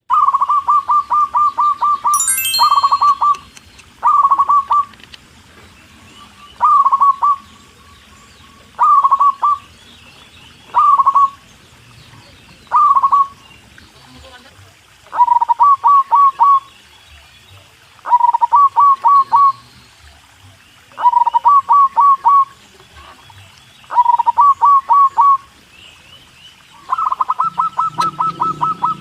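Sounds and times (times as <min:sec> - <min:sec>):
bird calls: 0:06.2 - 0:11.4, 0:12.1 - 0:14.0, 0:26.2 - 0:29.0.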